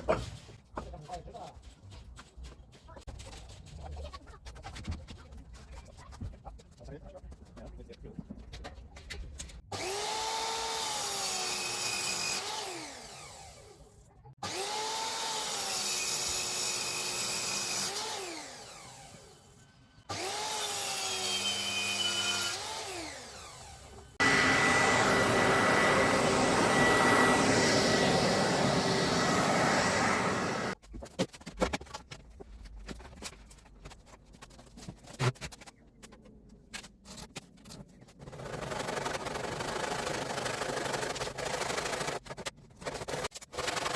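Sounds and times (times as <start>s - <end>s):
electric power saw running: 20.1s - 30.8s.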